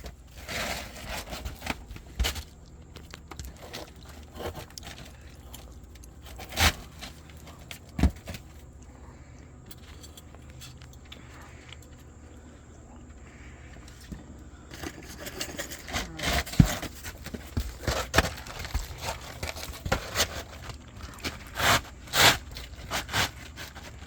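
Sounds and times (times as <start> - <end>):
metal tools clinking and scraping: 9.7 - 12.0, 13.8 - 21.4.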